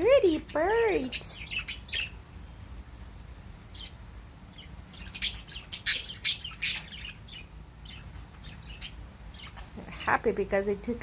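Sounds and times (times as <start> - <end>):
budgerigars chirping: 0.2 - 2.2, 3.7 - 9.7.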